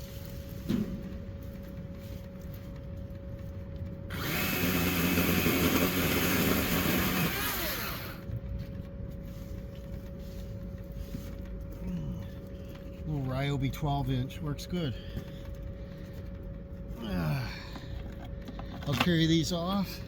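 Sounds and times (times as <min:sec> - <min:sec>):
electric chainsaw whine: 0:04.1 - 0:08.3.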